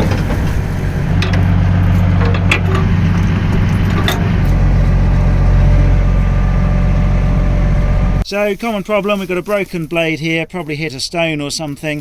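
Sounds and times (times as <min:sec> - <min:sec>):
combine harvester engine running: 0:00.0 - 0:08.2.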